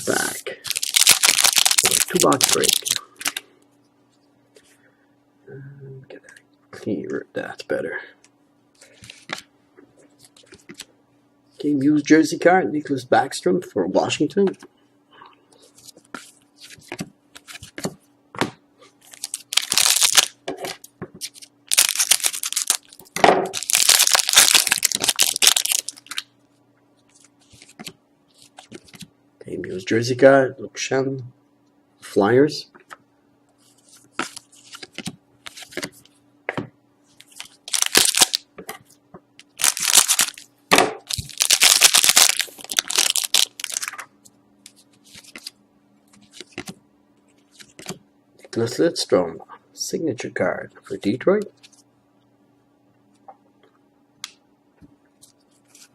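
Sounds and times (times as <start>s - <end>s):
card pack clicks and rustles: 0.0s - 3.4s, 19.0s - 26.2s, 37.2s - 38.4s, 39.4s - 44.1s
wrapper crinkling: 0.0s - 3.4s, 19.0s - 20.4s, 21.2s - 26.2s, 37.2s - 38.4s, 39.4s - 44.1s.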